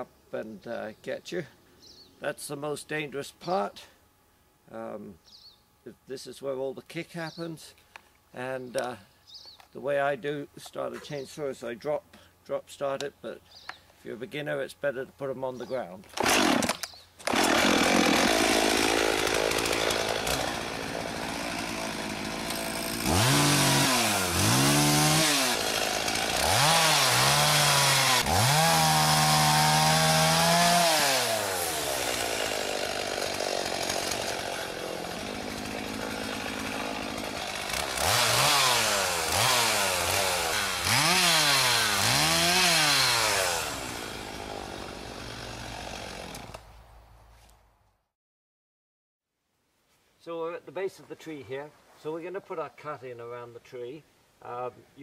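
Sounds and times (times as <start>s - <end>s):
chainsaw idling and revving: 16.1s - 46.6s.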